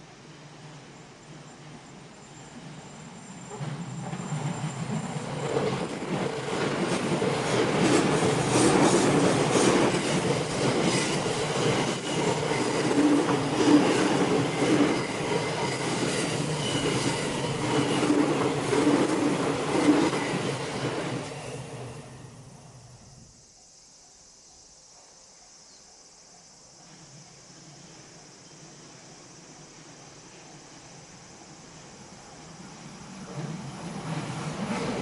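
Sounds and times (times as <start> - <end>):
train wheels clacking: 3.5 - 21.8
wheel squeal: 13.8 - 18.1.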